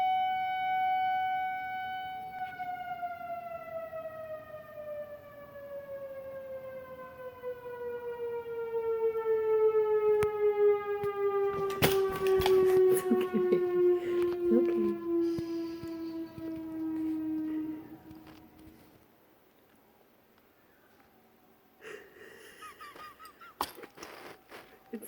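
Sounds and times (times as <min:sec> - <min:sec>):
warning siren: 0:00.0 - 0:19.0.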